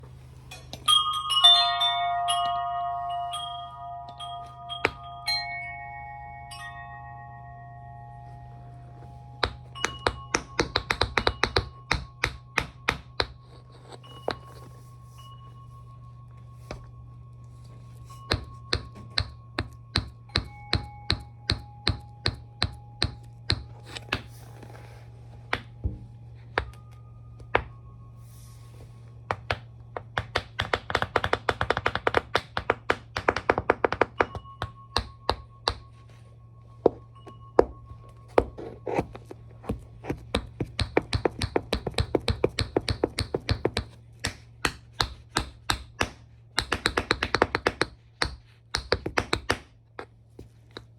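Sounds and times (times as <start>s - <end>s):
steady low hum: 0.0s - 50.9s
tap shoes striking hard floor: 9.4s - 13.4s, 29.3s - 35.8s, 38.4s - 50.1s.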